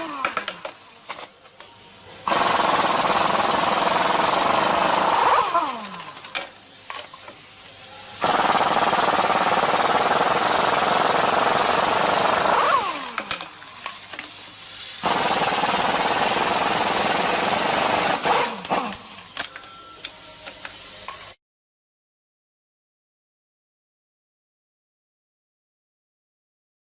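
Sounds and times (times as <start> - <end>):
air impact wrench running: 0.0 - 1.3, 2.2 - 21.2
air motor winding down: 2.3 - 6.3, 8.2 - 13.4.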